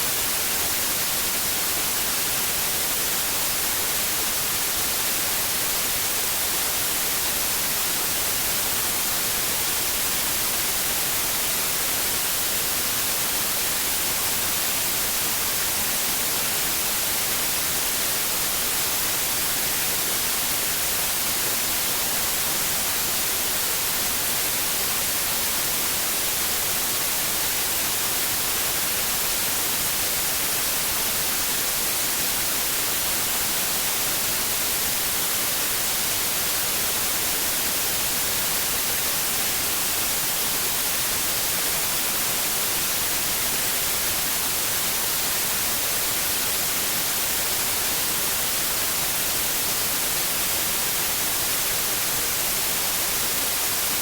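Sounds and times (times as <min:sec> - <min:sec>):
steady white noise hiss: 0:00.0 - 0:54.0.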